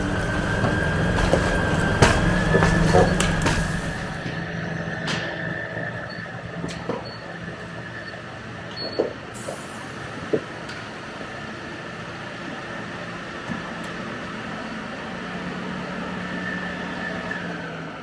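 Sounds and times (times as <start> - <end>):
harvest machinery engine hum: 0.0 - 8.7.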